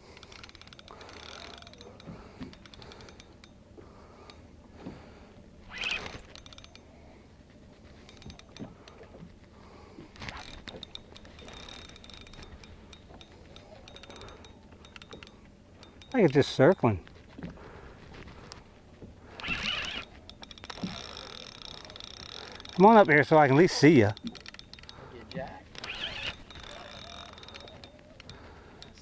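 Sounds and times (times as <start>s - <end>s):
fishing reel clicking and ratcheting: 0.0s - 3.6s, 5.6s - 7.0s, 7.9s - 9.1s, 10.1s - 16.9s, 19.3s - 29.0s.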